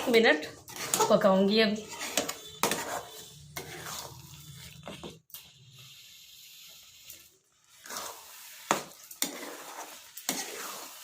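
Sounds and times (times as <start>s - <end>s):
chutney sizzling in a pan: 5.6s - 11.0s.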